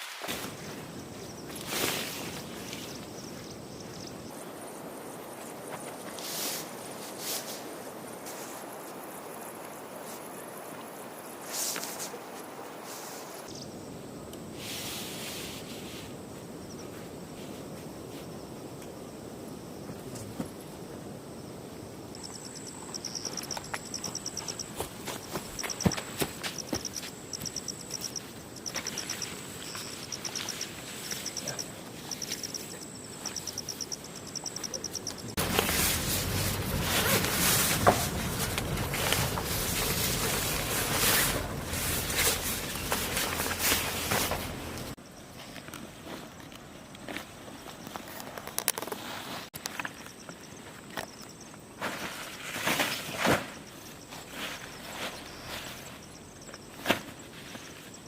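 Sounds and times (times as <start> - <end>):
high insect trill: 0.0 - 14.2, 15.7 - 48.1, 49.7 - 58.0
crickets chirping: 0.0 - 58.0
faint outdoor hiss: 0.0 - 58.0
crunches and rustles: 22.2 - 50.1
loud rushing noise: 35.4 - 42.6.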